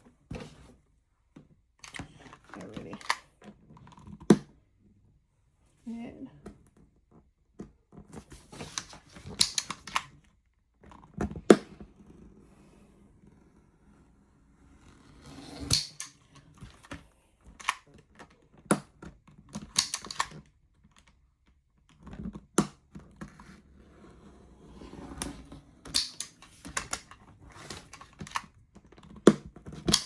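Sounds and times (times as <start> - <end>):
craft blade cutting plastic board: 15.1 - 16.2.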